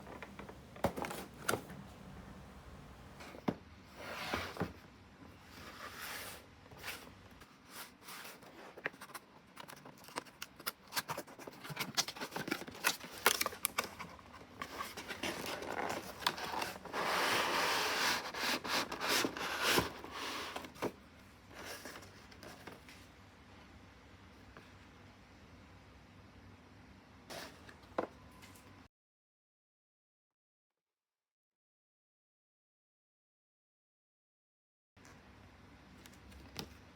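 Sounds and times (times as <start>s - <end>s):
cardboard and plastic scraping: 0.0s - 1.9s, 5.4s - 23.1s
packaging tearing: 9.9s - 14.1s.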